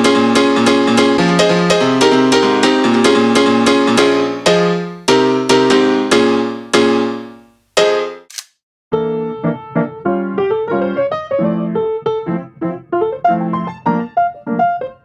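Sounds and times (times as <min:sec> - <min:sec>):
piano chords: 0:00.0 - 0:08.3, 0:09.0 - 0:15.0.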